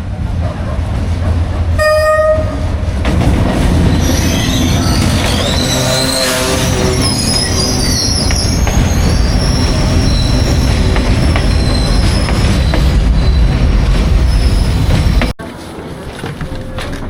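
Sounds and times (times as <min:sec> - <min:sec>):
train rumbling on rails: 0:00.0 - 0:17.0
wheel squeal: 0:03.8 - 0:15.2.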